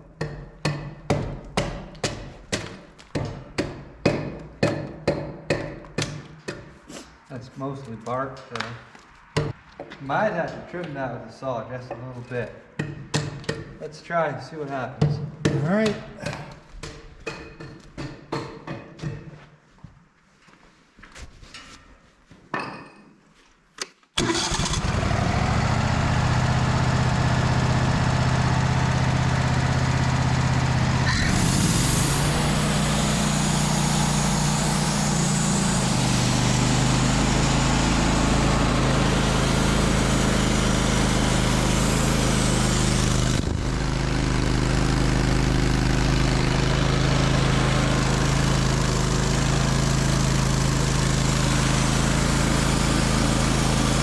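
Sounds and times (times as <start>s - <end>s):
sawmill engine running: 24.2s - 54.0s.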